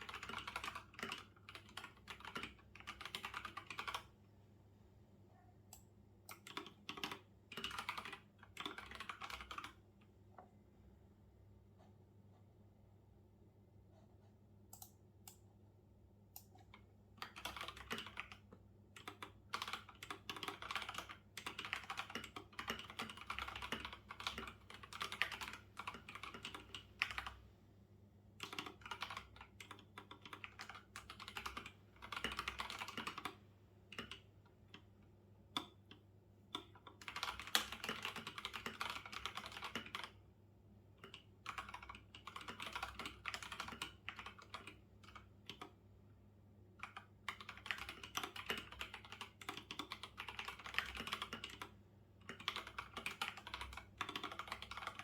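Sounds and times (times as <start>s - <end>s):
typing on computer keyboard: 0.0s - 4.2s, 5.7s - 9.8s, 16.4s - 27.4s, 28.4s - 34.9s, 35.5s - 40.2s, 41.0s - 45.8s, 46.8s - 55.0s.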